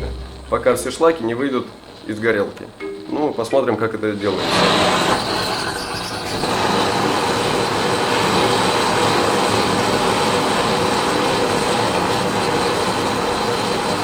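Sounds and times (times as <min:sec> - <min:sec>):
gas torch flame hissing: 0:04.0 - 0:14.0.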